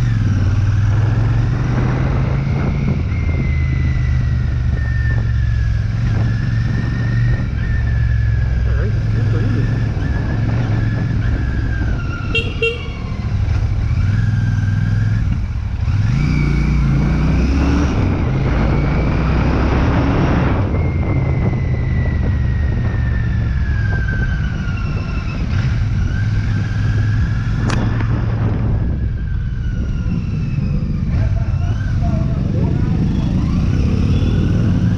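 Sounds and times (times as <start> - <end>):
motorcycle engine revving: 0.0 - 34.9
wind noise: 0.0 - 34.9
horn toot: 12.3 - 13.1.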